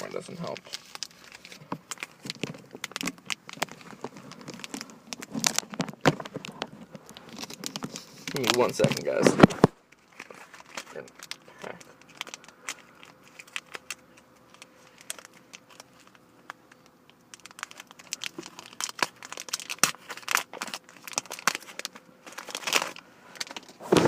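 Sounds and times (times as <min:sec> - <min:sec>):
wrapper crinkling and tearing: 0:00.0 - 0:23.9.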